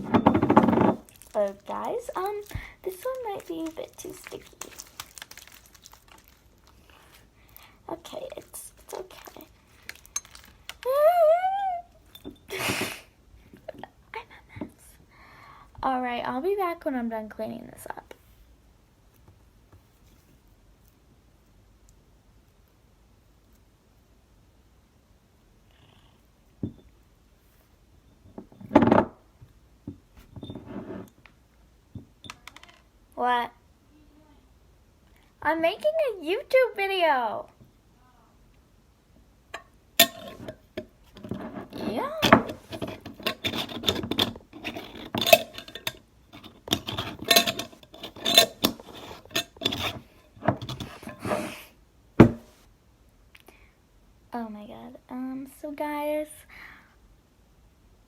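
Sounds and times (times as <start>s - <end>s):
plastic container clattering: 0.0s - 6.8s
clattering and rustling: 0.0s - 7.3s, 8.0s - 10.9s, 40.0s - 51.6s
scraping: 0.0s - 7.3s, 40.0s - 52.6s
knocks: 52.2s - 52.5s.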